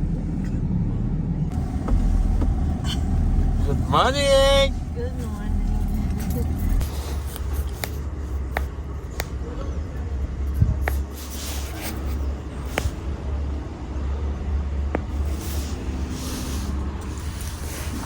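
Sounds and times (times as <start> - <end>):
vehicle engine low rumble: 0.0 - 18.0
soft hissing: 15.1 - 18.0.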